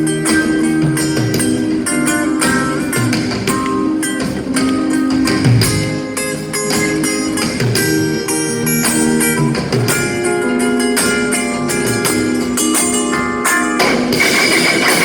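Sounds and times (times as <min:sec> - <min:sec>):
band playing instrumental: 0:00.0 - 0:15.0
drum hits: 0:00.8 - 0:08.1, 0:13.8 - 0:15.0.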